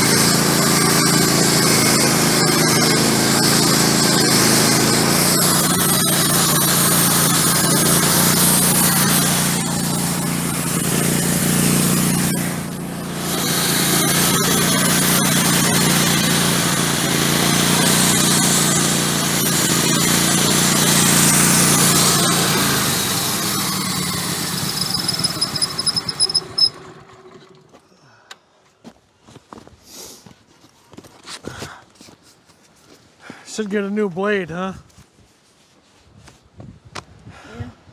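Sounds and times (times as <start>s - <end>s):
band sawmill cutting log: 0.0s - 27.8s.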